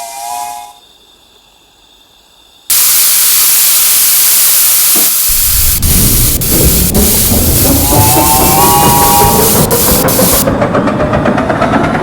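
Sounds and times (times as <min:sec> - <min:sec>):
multi-tone steam whistle: 0:00.0 - 0:00.8, 0:02.7 - 0:10.5
escaping steam hissing: 0:02.7 - 0:10.5.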